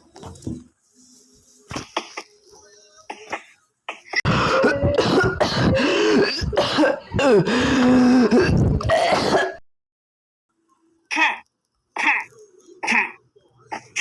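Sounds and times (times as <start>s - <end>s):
person coughing and clearing throat: 1.7s - 2.3s, 3.1s - 9.6s, 12.0s - 14.0s.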